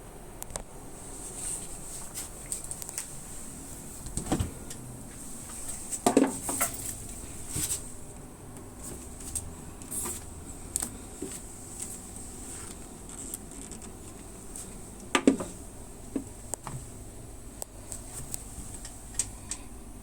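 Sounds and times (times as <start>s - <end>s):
refrigerator door clicks and knocks: 4.1s - 4.6s, 15.2s - 15.6s.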